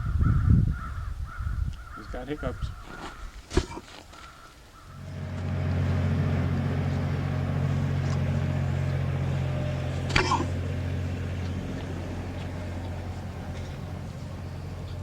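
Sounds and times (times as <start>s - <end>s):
low motor hum: 4.8s - 15.0s.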